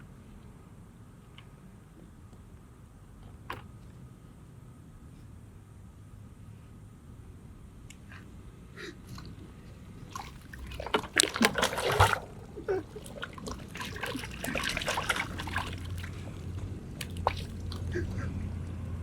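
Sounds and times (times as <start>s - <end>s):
slime splashing: 10.0s - 18.9s.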